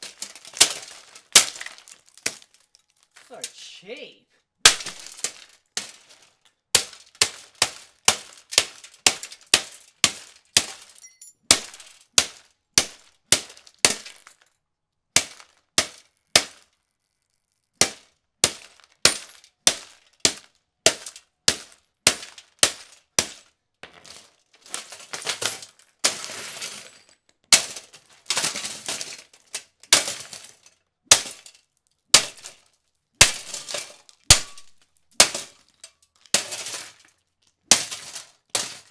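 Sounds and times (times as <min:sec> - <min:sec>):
golf club smashing plastic fan: 0:00.0 - 0:03.3, 0:04.6 - 0:14.4, 0:27.5 - 0:31.6, 0:32.2 - 0:38.9
broken plastic crunching and rattling: 0:00.0 - 0:03.4, 0:04.7 - 0:11.0, 0:22.2 - 0:38.9.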